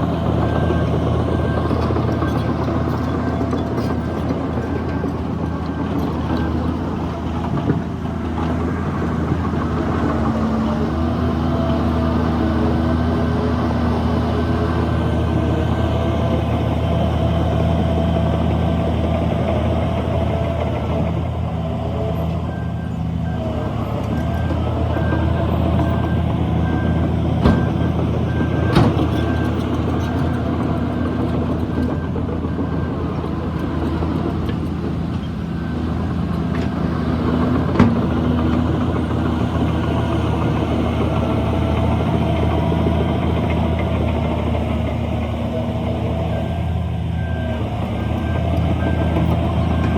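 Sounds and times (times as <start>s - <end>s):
reversing alarm beeping: 0.0s - 34.5s, 35.4s - 49.9s
heavy diesel machinery running: 0.0s - 49.9s.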